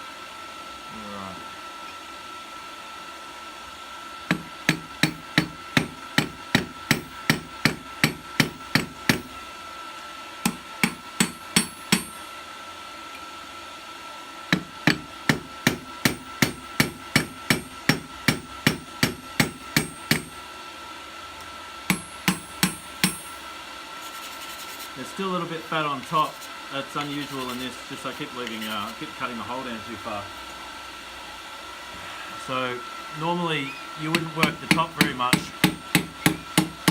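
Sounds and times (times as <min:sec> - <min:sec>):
hammer striking metal: 0:04.3 - 0:09.4, 0:10.5 - 0:12.3, 0:14.5 - 0:20.4, 0:21.9 - 0:23.5, 0:34.1 - 0:36.9.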